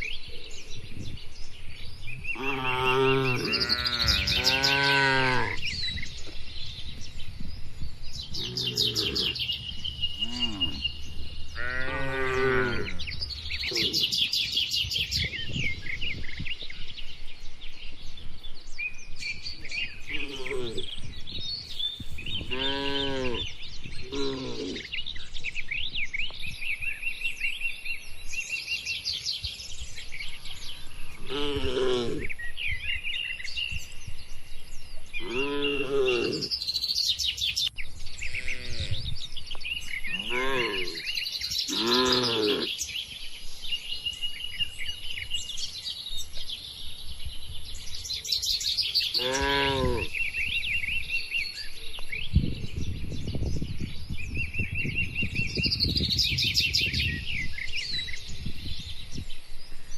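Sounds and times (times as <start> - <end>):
small birds chirping: 0.0 - 59.9
cattle mooing: 2.4 - 5.6, 8.4 - 9.4, 31.2 - 32.3, 35.2 - 36.5, 40.2 - 41.1, 41.7 - 42.7, 49.2 - 50.1.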